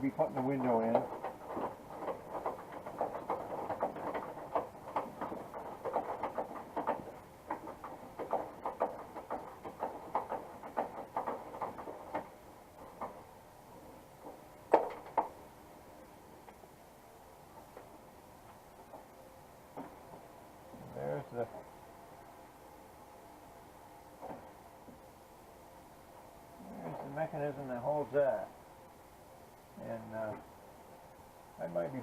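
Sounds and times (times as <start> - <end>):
sharp knocks: 0.3 - 13.3, 14.2 - 15.4
door parts clicking and rattling: 0.4 - 13.3, 14.2 - 15.4.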